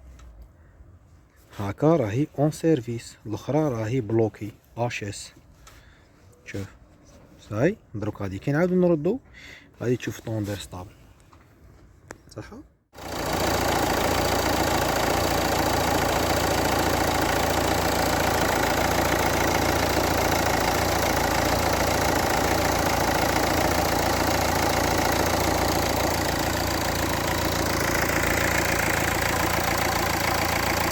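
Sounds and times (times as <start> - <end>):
diesel engine idling: 13.0 - 30.9.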